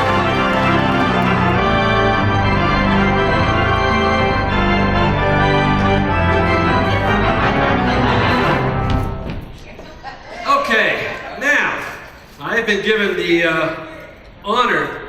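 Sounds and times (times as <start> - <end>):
organ-like keyboard chords: 0.0 - 9.4.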